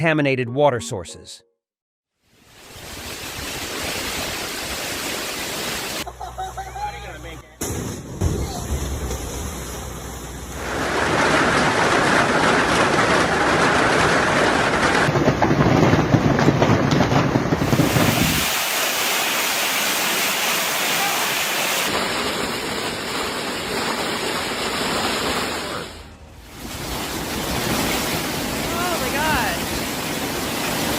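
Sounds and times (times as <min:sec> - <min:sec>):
heavy rain and storm: 0:02.4 - 0:06.0, 0:08.4 - 0:30.9.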